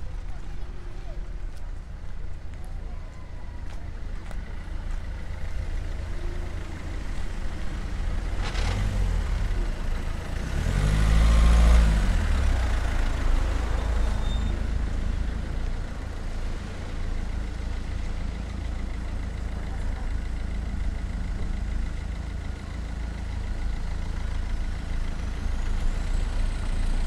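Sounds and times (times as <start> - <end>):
low traffic rumble: 0.0 - 27.0
motor vehicles passing: 3.6 - 22.3.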